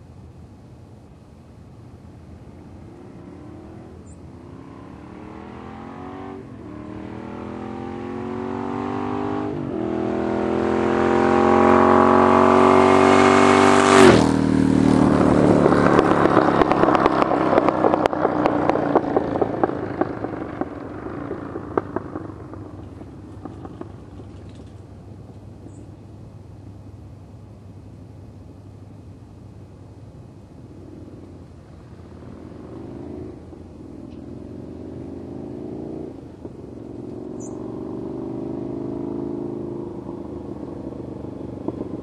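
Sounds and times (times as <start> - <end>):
motorcycle accelerating past: 2.6 - 24.9, 30.6 - 42.0
exhaust crackling and popping: 14.0 - 26.0, 36.1 - 37.5, 39.9 - 42.0.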